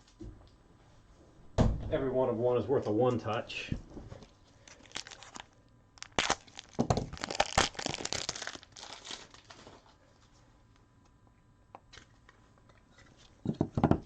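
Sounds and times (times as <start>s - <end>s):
plastic crinkling: 4.2s - 10.2s.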